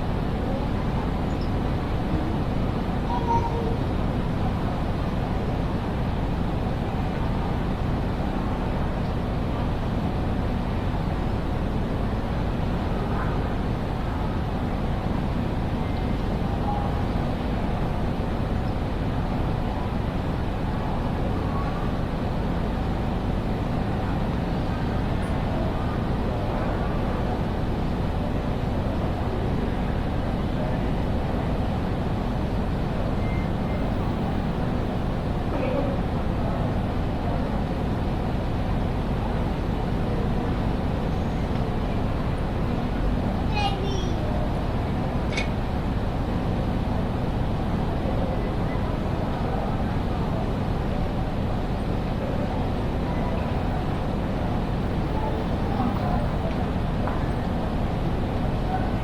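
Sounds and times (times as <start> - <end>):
station hall background rumble: 0.0 - 59.0.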